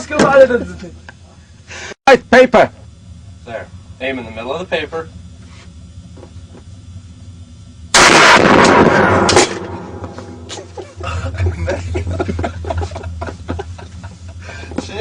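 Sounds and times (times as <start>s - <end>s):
loud gunshot: 7.9s - 10.4s.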